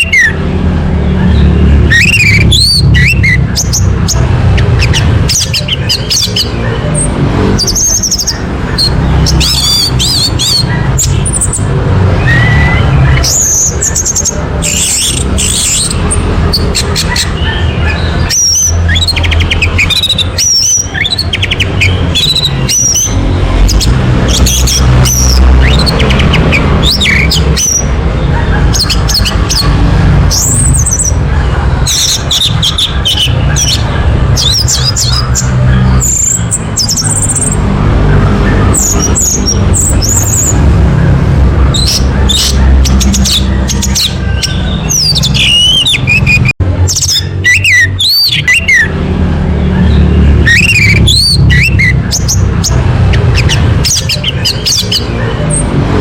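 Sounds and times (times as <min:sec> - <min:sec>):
thrush singing whistled phrases: 0:01.3 - 0:06.6, 0:07.6 - 0:27.9, 0:41.7 - 0:48.9, 0:49.8 - 0:52.4.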